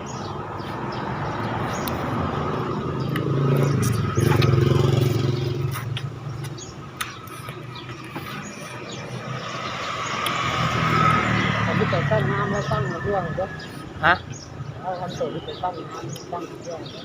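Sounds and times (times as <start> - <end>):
vehicle engine passing: 0.4 - 16.2.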